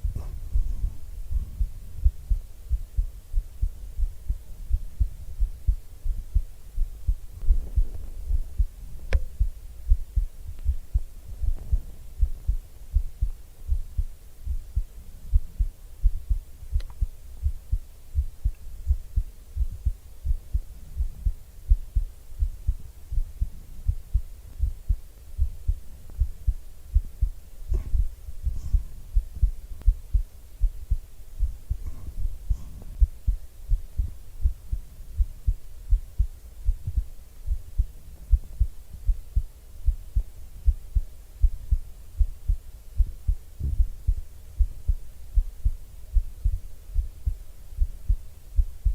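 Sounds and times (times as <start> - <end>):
heartbeat thumps: 0.0 - 48.9
faint clicks: 16.8 - 17.0.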